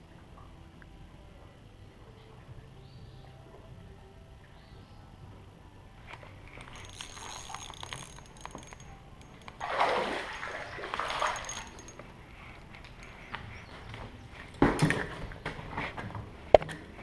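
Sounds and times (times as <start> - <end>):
small clinks and clicks: 6.1 - 9.7, 10.4 - 13.7
water splashing and sloshing: 6.6 - 17.0.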